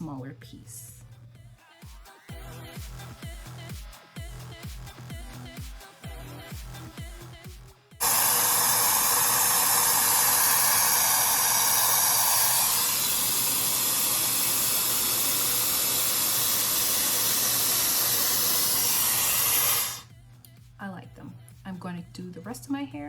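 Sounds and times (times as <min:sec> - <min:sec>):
hair dryer blowing air: 0:08.0 - 0:20.1.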